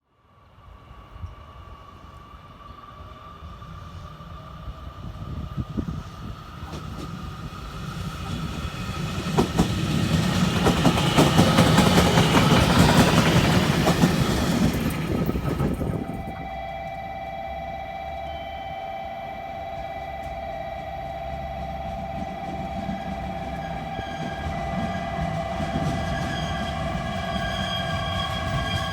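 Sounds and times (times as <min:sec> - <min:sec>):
electric train arriving: 0:00.2 - 0:28.9
wheels clacking over rail joints: 0:06.6 - 0:16.4
high whine: 0:10.5 - 0:28.9.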